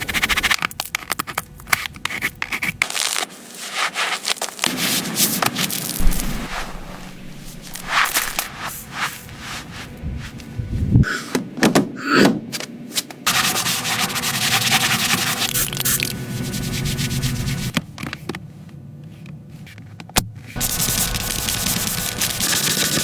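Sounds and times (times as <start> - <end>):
hand scrubbing a surface: 3.6 - 10.4, 13.3 - 17.7, 20.6 - 23.0.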